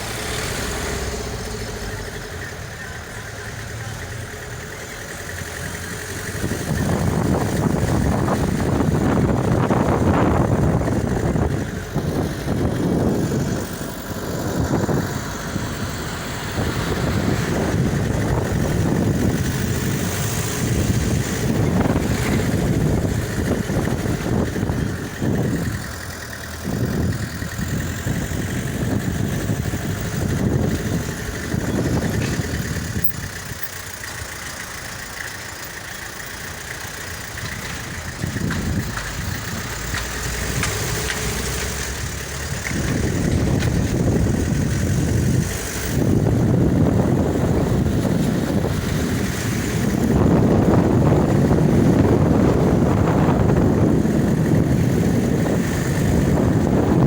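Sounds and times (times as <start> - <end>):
road rumble: 0.0 - 57.0
vehicle engine: 0.0 - 57.0.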